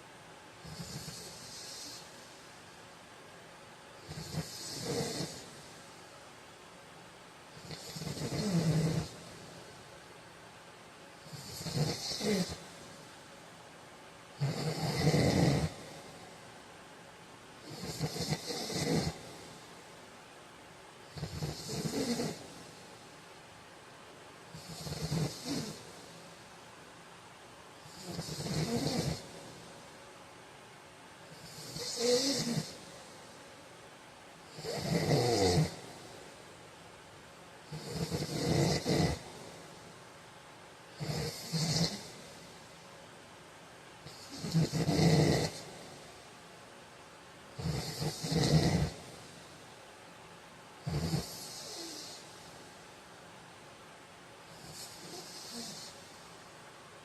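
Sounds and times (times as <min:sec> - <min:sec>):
man snoring: 0:04.1 - 0:05.5, 0:07.6 - 0:09.2, 0:11.3 - 0:12.6, 0:14.4 - 0:16.0, 0:17.7 - 0:19.3, 0:21.1 - 0:22.5, 0:24.6 - 0:25.9, 0:27.9 - 0:29.3, 0:31.4 - 0:32.8, 0:34.5 - 0:35.9, 0:37.7 - 0:39.4, 0:41.0 - 0:42.2, 0:44.1 - 0:45.8, 0:47.6 - 0:49.0, 0:50.8 - 0:52.2.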